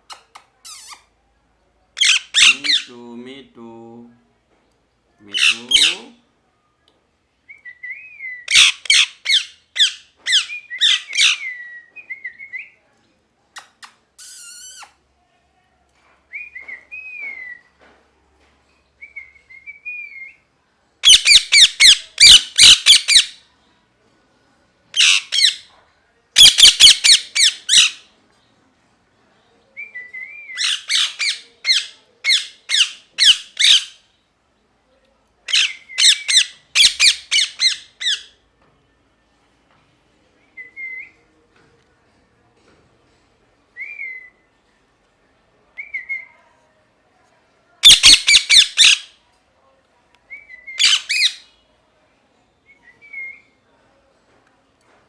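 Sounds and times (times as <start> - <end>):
parrot screeching: 0.2 - 1.0, 2.0 - 2.9, 5.3 - 6.0, 8.5 - 11.6, 14.2 - 15.0, 21.0 - 23.4, 25.0 - 25.6, 26.4 - 28.0, 30.6 - 34.0, 35.5 - 38.3, 47.8 - 49.1, 50.8 - 51.5.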